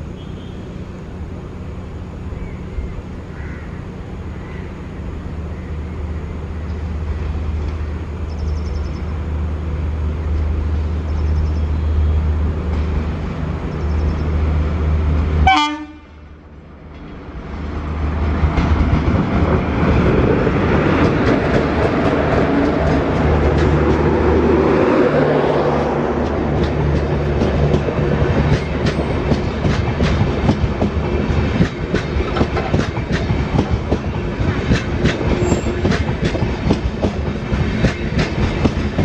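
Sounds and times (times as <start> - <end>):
running train rumble: 0.0 - 39.0
train horn toot: 0.1 - 0.8, 15.4 - 16.3, 35.3 - 36.0.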